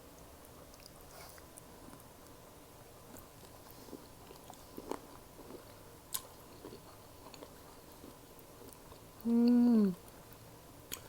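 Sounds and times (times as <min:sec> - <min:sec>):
person chewing: 0:00.7 - 0:02.4, 0:03.0 - 0:11.0.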